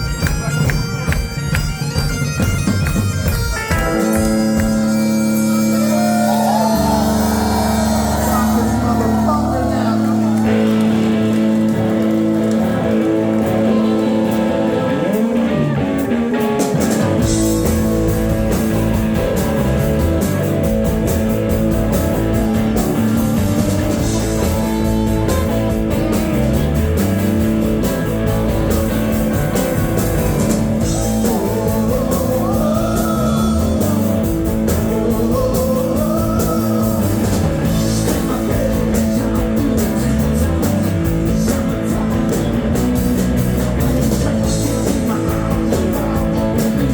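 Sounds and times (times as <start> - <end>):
bagpipe drone: 0.0 - 12.4
drums and bass: 0.0 - 46.9
live rock band: 0.0 - 46.9.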